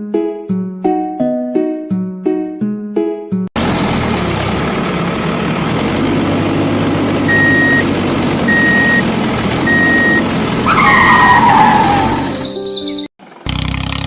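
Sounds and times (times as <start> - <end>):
vehicle engine running: 3.6 - 12.4, 13.2 - 14.0
reversing alarm beeps: 7.3 - 7.8, 8.5 - 9.0, 9.7 - 10.2.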